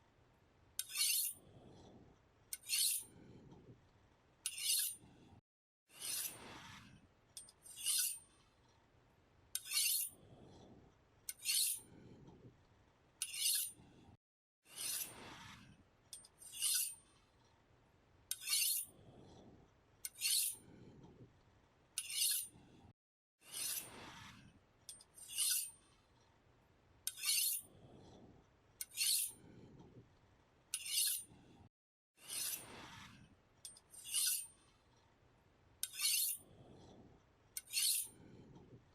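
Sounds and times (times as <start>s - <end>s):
knife scraping on sharpener: 0.8s - 1.4s, 2.5s - 3.2s, 4.4s - 5.0s, 5.9s - 6.5s, 7.4s - 8.2s, 9.6s - 10.2s, 11.3s - 11.9s, 13.2s - 13.8s, 14.7s - 15.2s, 16.2s - 17.0s, 18.3s - 18.9s, 20.0s - 20.6s, 22.0s - 22.5s, 23.5s - 24.0s, 24.9s - 25.8s, 27.1s - 27.7s, 28.8s - 29.4s, 30.7s - 31.3s, 32.2s - 32.9s, 33.7s - 34.5s, 35.8s - 36.5s, 37.6s - 38.2s.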